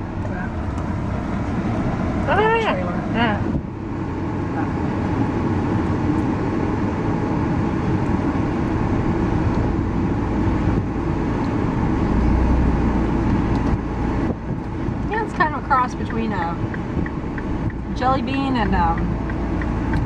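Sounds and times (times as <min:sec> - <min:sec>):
car road and engine noise: 0:00.0 - 0:20.0.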